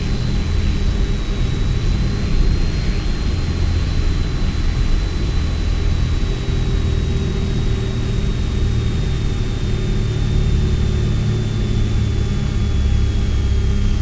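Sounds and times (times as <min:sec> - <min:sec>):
aircraft engine droning: 0:00.0 - 0:14.0.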